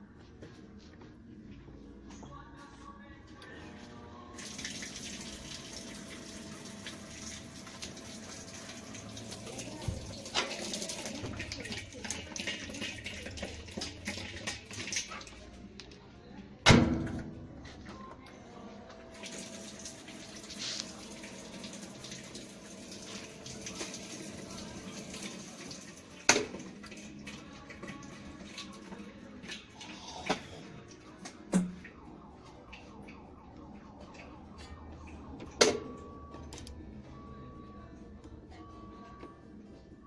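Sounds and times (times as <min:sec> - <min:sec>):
water filling washing machine tub: 0:04.4 - 0:15.4, 0:19.1 - 0:30.4.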